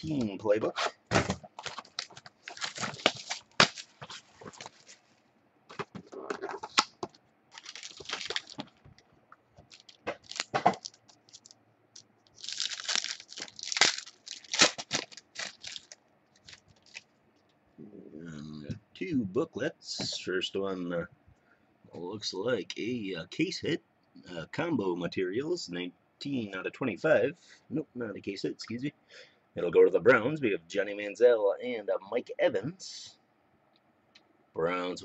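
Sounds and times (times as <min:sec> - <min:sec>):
cardboard and cards rustling: 0:01.1 - 0:05.1, 0:05.7 - 0:09.0, 0:09.6 - 0:11.5, 0:12.4 - 0:17.0
packaging tearing and crinkling: 0:01.6 - 0:04.9, 0:06.5 - 0:08.8, 0:09.7 - 0:11.5, 0:12.4 - 0:17.0.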